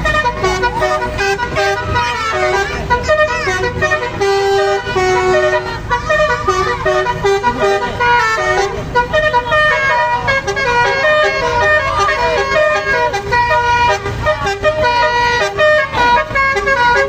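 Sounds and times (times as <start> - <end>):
multi-tone bus horn melody: 0.0 - 17.0.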